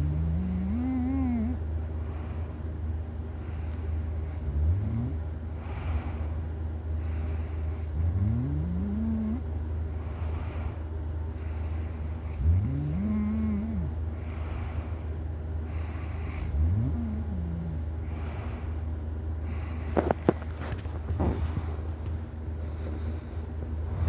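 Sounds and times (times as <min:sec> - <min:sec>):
steady low hum: 0:00.0 - 0:24.0
breathing: 0:02.0 - 0:02.7, 0:03.4 - 0:04.0, 0:05.6 - 0:07.9, 0:09.9 - 0:12.3, 0:14.2 - 0:16.4, 0:18.0 - 0:24.0
person snoring: 0:21.1 - 0:21.7.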